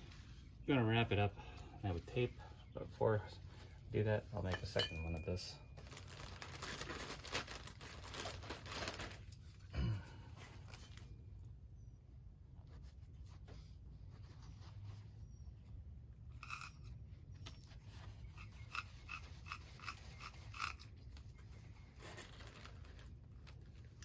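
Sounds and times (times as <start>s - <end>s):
packing material crinkling: 5.0s - 9.7s, 21.5s - 24.0s.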